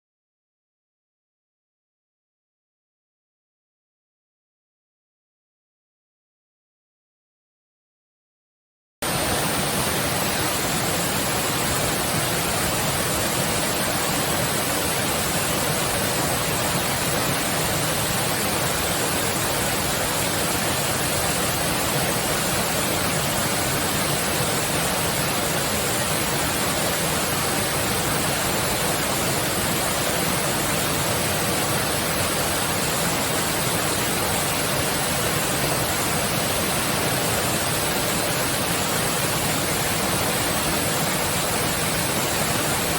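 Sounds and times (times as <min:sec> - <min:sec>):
waterfall rushing: 0:09.0 - 0:42.9.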